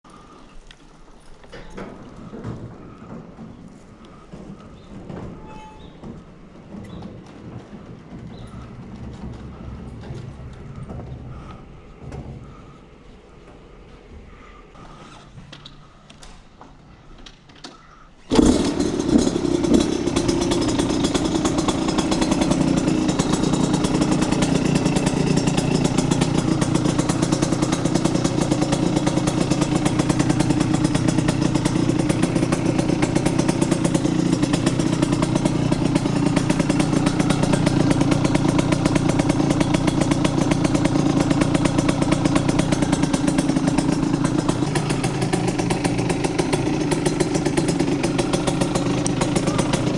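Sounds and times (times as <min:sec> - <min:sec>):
motorcycle engine starting and idling: 0:00.0 - 0:49.9.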